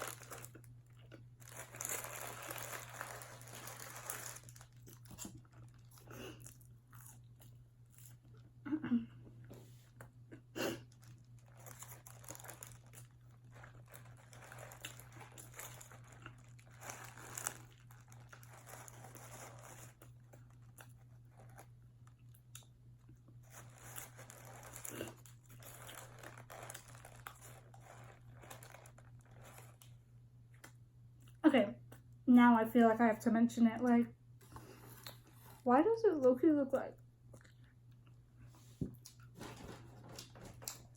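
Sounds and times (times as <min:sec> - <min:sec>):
paper wrapper crinkling: 0:00.0 - 0:07.1, 0:10.9 - 0:21.8, 0:23.4 - 0:30.0
chewing and crunching food: 0:00.0 - 0:08.7, 0:09.6 - 0:32.2, 0:34.4 - 0:35.7, 0:36.7 - 0:40.9
faint low hum: 0:00.0 - 0:40.9.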